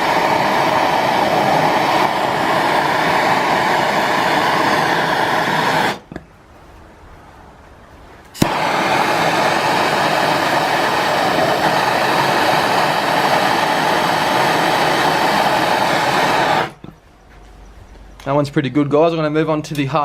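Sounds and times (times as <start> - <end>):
gas torch burning rush: 0.0 - 6.2, 8.3 - 16.9
gas torch ignition click: 0.0 - 6.3, 8.3 - 16.9.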